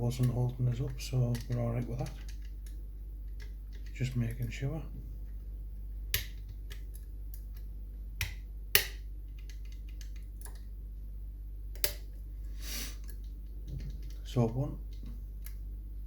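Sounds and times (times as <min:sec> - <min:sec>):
steady low hum: 0:00.0 - 0:16.0
lock picks clicking in a lock: 0:00.2 - 0:04.4.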